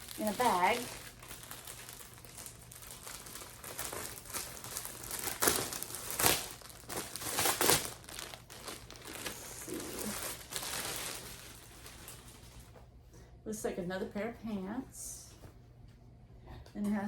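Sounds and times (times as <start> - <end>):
plastic bag crinkling: 0.0 - 12.7.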